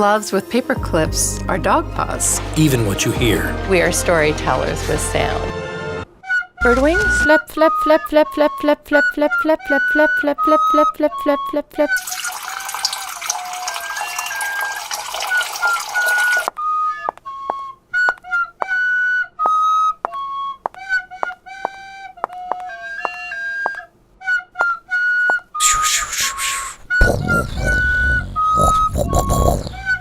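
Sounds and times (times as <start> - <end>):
flute-like melody: 6.1 - 28.6.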